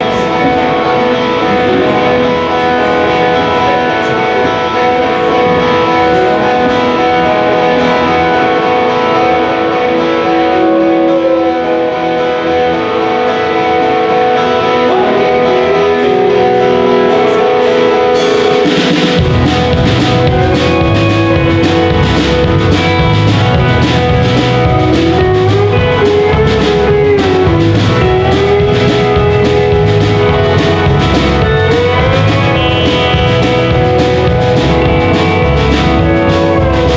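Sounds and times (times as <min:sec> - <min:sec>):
live rock band: 0:00.0 - 0:36.9.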